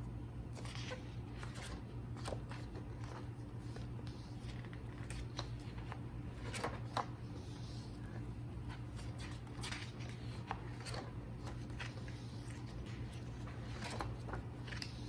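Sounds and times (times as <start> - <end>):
paper and plastic rustling: 0.6 - 15.0.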